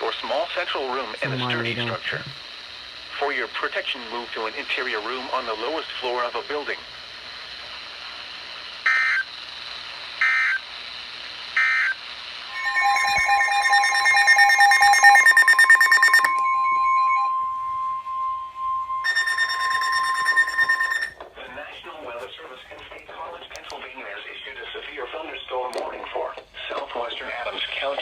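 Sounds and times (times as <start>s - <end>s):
long steady alert tone: 12.5s - 21.2s
steady electronic tones: 12.5s - 21.2s
warbling data bursts: 12.5s - 21.2s.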